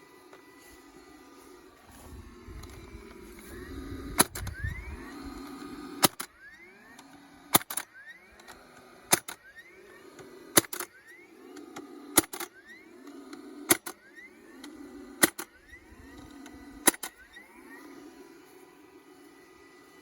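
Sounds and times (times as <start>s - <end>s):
stapler motor pumping: 0.0s - 20.0s
stapler firing staples: 4.1s - 4.6s, 6.0s - 6.4s, 7.0s - 9.4s, 10.2s - 10.9s, 11.7s - 12.5s, 13.6s - 14.0s, 15.2s - 15.5s, 16.8s - 17.2s.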